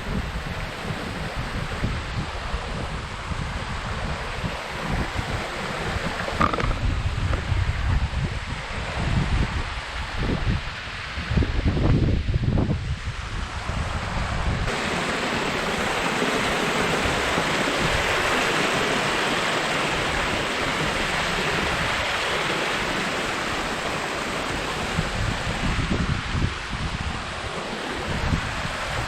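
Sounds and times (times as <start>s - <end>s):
water rushing from waterfall: 0.0s - 29.0s
wind buffeting microphone: 0.0s - 29.0s.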